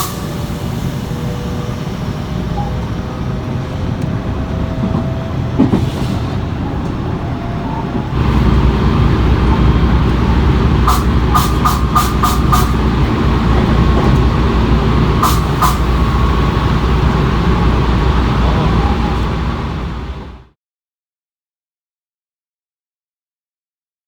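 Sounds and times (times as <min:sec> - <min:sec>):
low rumble: 0:08.1 - 0:20.5
bursts of escaping air: 0:08.2 - 0:18.4.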